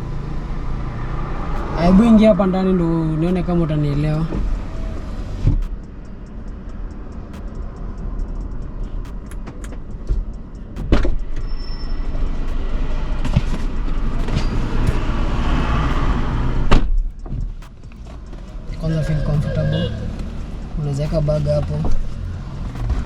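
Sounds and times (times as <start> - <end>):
car engine idling: 0.0 - 23.0
car door clunks: 16.7 - 17.6.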